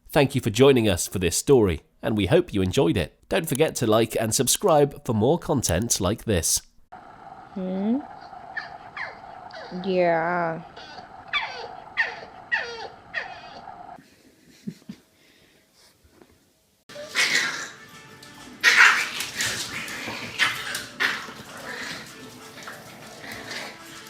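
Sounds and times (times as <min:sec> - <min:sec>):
dog yelping: 0:08.0 - 0:14.0, 0:16.9 - 0:17.8, 0:18.6 - 0:22.1.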